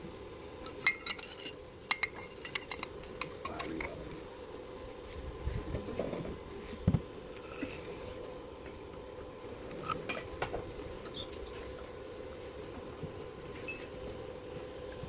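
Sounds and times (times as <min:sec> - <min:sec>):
light metal clicks and clinks: 0:00.6 - 0:04.0.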